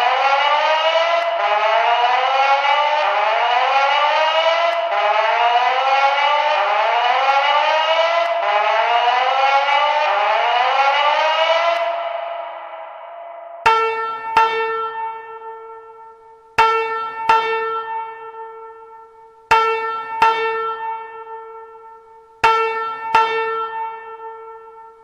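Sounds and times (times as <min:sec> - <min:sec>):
fire alarm bell-like chime: 0:00.0 - 0:25.0.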